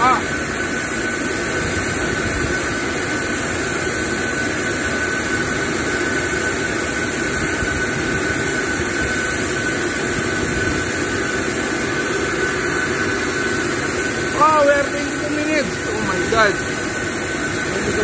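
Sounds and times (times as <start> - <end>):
high-pitched turbine whines: 0.0 - 18.0
jet turbine rumble: 0.0 - 18.0.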